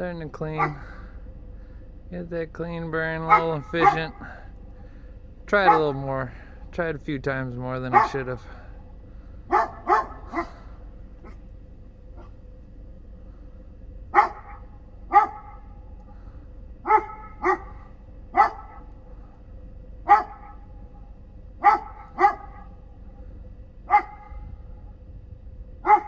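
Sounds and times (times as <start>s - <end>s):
furnace hum: 0.0s - 26.0s
big dog barking: 0.3s - 1.1s, 3.0s - 4.6s, 5.5s - 6.4s, 7.7s - 8.8s, 9.4s - 11.5s, 14.1s - 15.9s, 16.8s - 23.0s, 23.8s - 24.6s, 25.8s - 26.0s.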